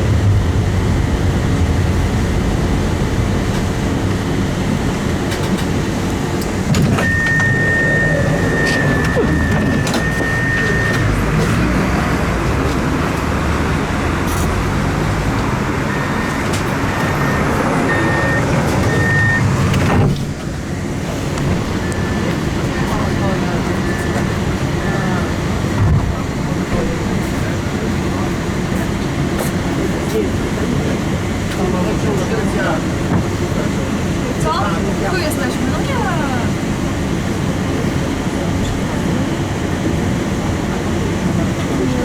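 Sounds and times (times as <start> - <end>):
tram rumbling on rails: 0.0 - 42.0
short high beeps: 7.0 - 11.1, 17.2 - 19.5.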